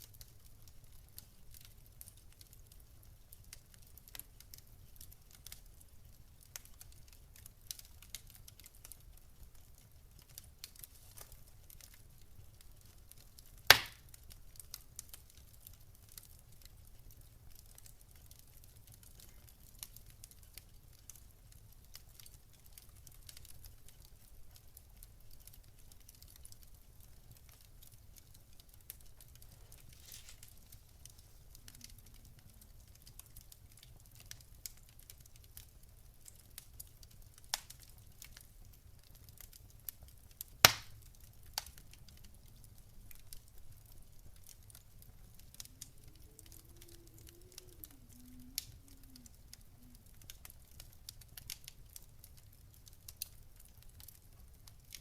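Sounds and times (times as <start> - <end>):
wood fire crackling: 0.0 - 55.0
loud sharp pop: 13.7 - 14.0, 40.7 - 40.9.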